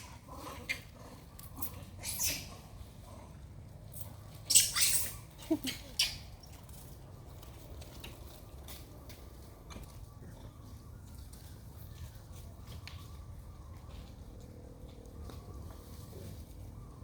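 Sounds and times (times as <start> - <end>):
monkeys high-pitched calls: 1.6 - 2.7, 4.4 - 6.3.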